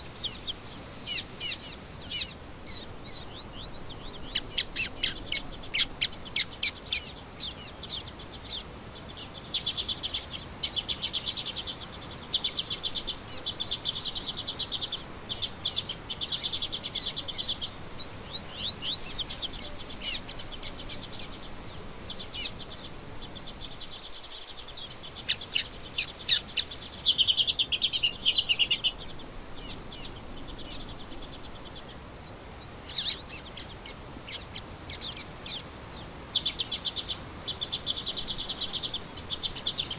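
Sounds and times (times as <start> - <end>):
songbirds chirping: 0.0 - 39.9
fast buzzing bird trills: 32.8 - 39.9.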